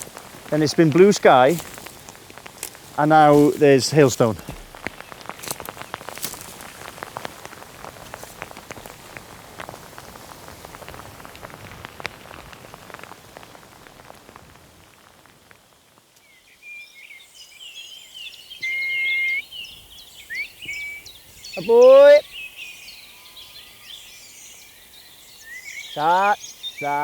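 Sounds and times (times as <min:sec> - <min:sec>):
hailstones pattering: 0:00.0 - 0:16.6
small bird singing: 0:16.2 - 0:27.0.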